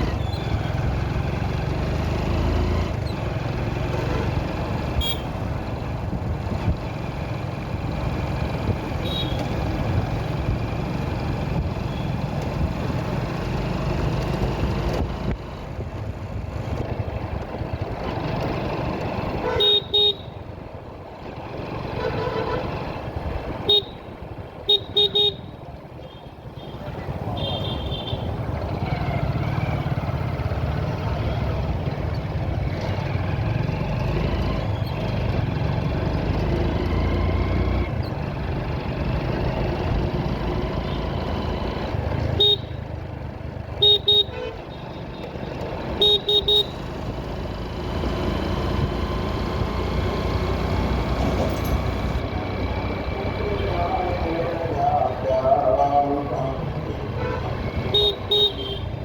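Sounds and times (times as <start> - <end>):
vehicle engine and road noise: 0.0 - 59.0
short horn beeps: 5.0 - 5.4.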